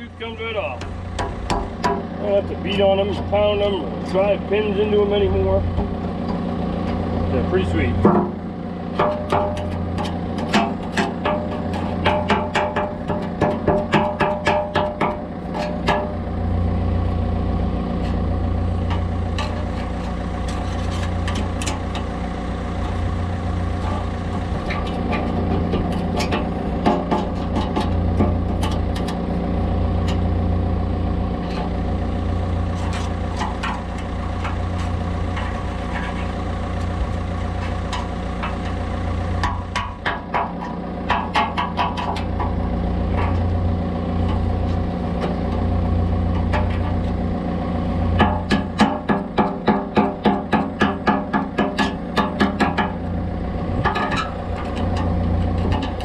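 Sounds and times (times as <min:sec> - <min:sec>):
diesel engine idling: 0:00.0 - 0:56.0
clicks and knocks of bucket: 0:08.0 - 0:16.2, 0:23.8 - 0:29.3, 0:32.7 - 0:43.6, 0:48.1 - 0:53.0, 0:53.8 - 0:56.0.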